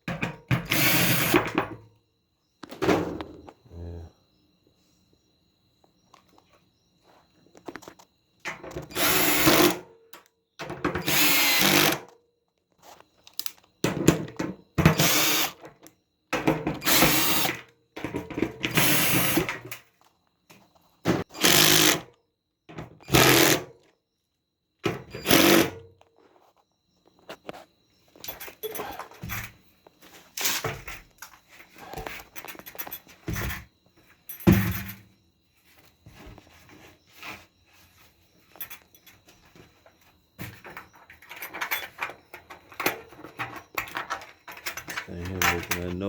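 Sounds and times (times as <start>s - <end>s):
power drill driving screws: 0.6s - 1.5s, 8.9s - 9.8s, 11.0s - 12.0s, 14.9s - 15.6s, 16.8s - 17.6s, 18.7s - 19.5s, 21.3s - 22.0s, 23.1s - 23.7s, 25.2s - 25.8s.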